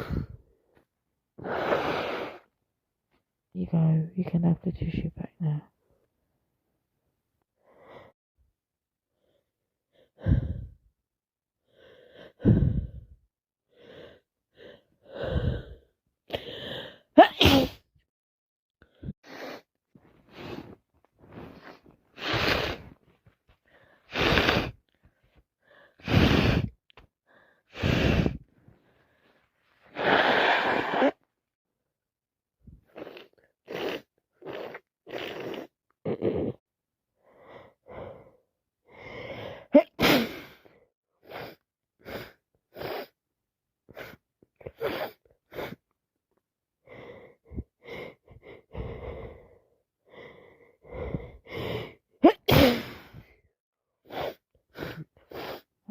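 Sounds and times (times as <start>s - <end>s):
gasping breaths: 11.7s - 17.1s, 46.8s - 52.0s
person sneezing: 17.2s - 17.8s, 39.8s - 40.5s, 52.2s - 53.2s.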